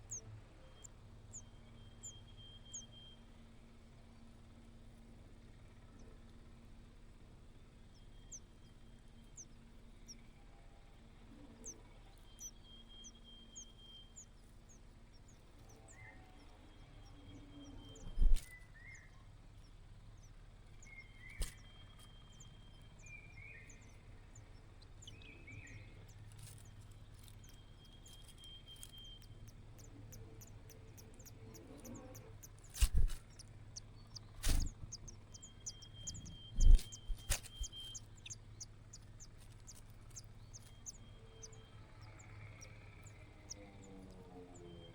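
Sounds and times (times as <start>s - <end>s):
low steady hum: 0.0s - 44.9s
nestling birds cheeping: 0.0s - 44.9s.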